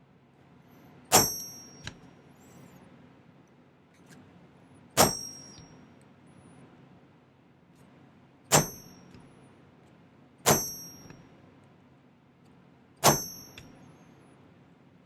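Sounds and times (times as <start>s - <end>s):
hammer striking metal stamp: 1.1s - 2.0s, 5.0s - 5.6s, 8.5s - 9.2s, 10.5s - 11.2s, 13.0s - 13.7s.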